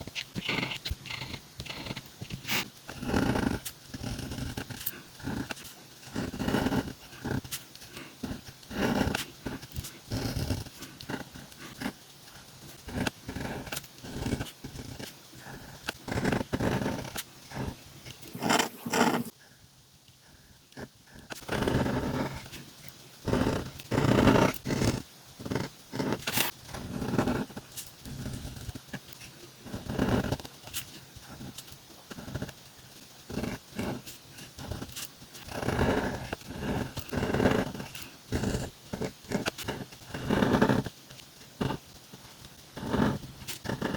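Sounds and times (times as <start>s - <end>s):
pen scratching on paper: 0.0s - 19.4s, 20.7s - 43.9s.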